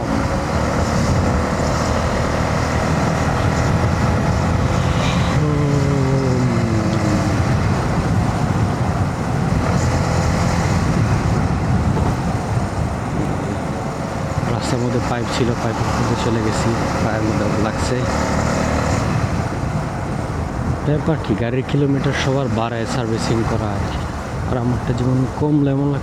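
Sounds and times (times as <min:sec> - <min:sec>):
motorcycle engine running: 0:00.0 - 0:20.5
road noise: 0:00.0 - 0:26.0
wind noise: 0:00.0 - 0:26.0.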